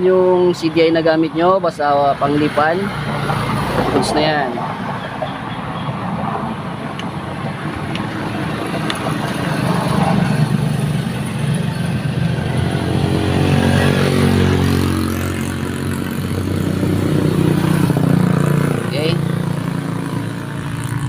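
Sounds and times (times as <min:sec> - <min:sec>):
motorcycle engine running: 0:09.2 - 0:21.0.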